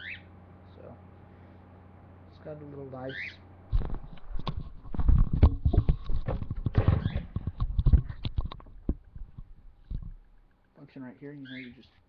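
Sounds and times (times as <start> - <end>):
heavy thuds and clatter: 3.7 - 10.2
plastic parts knocking and rattling: 3.7 - 10.3.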